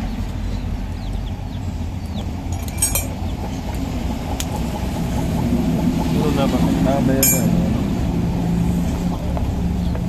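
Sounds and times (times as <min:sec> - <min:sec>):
steady low rumble: 0:00.2 - 0:09.9
light metallic clinks: 0:02.5 - 0:03.2, 0:07.2 - 0:07.5.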